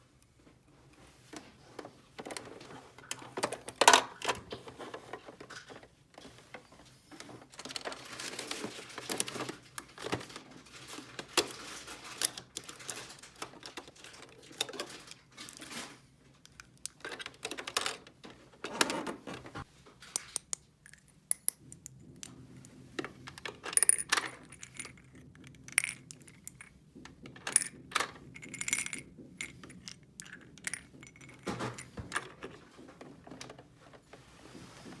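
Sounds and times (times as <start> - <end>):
plastic toy pieces clattering: 7.6 - 18.1, 23.2 - 26.7, 27.4 - 32.6.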